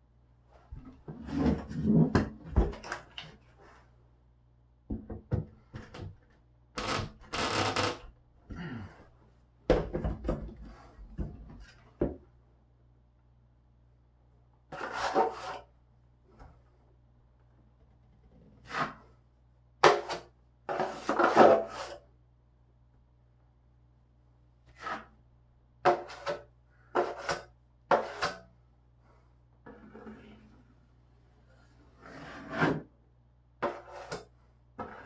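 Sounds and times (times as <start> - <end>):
drywall knife scraping compound: 14.7 - 15.7, 18.5 - 19.2, 19.8 - 22.1, 24.6 - 25.2, 25.8 - 28.5, 29.1 - 30.8, 31.4 - 32.9, 33.6 - 35.0.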